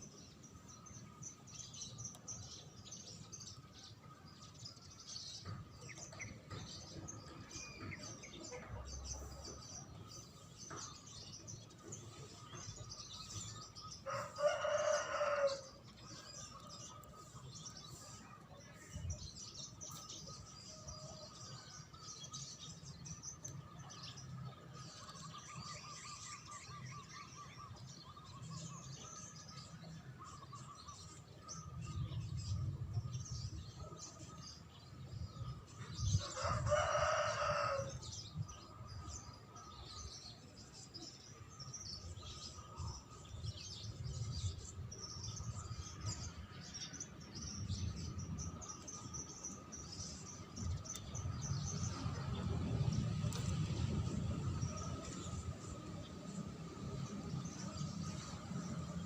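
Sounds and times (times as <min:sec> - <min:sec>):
songbirds chirping: 0:00.0 - 0:59.0
rooster crowing: 0:14.0 - 0:15.7, 0:36.2 - 0:38.0.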